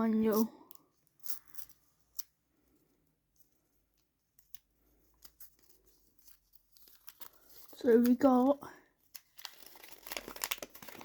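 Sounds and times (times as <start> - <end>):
packaging clicks and rustles: 5.2 - 11.0.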